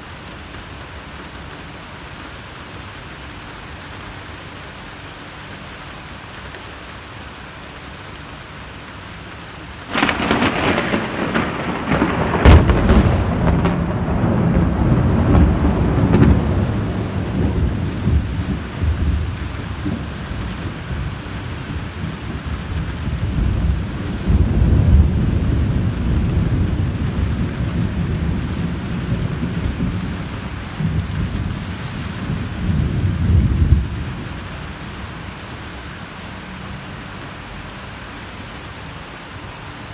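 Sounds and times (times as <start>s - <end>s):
steady rain: 0.0s - 39.9s
thunder clap and rumble: 9.9s - 35.4s.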